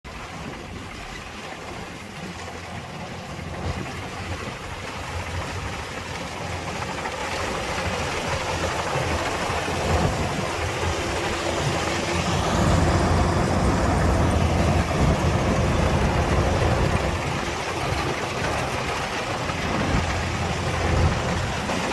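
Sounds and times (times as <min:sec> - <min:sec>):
combine harvester diesel engine running: 0:01.6 - 0:21.9.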